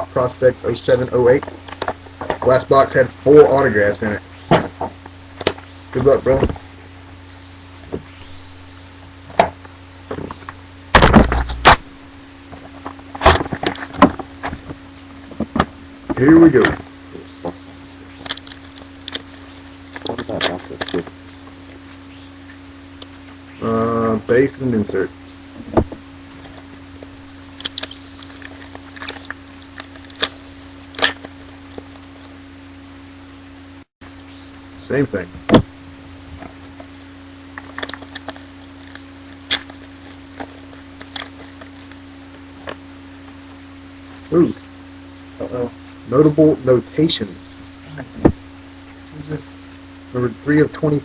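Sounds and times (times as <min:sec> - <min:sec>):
steady low hum: 0:00.0 - 0:51.0
wrapper crinkling and rustling: 0:37.6 - 0:42.0.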